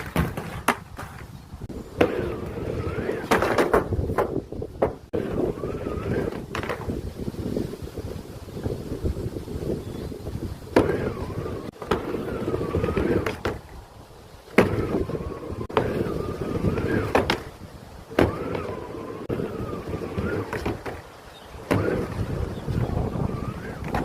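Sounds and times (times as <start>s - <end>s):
skateboard clacking down: 0.0s - 1.3s, 2.0s - 6.9s, 14.5s - 22.3s
skateboard wheels rolling: 0.0s - 24.0s
wind buffeting microphone: 0.0s - 24.0s.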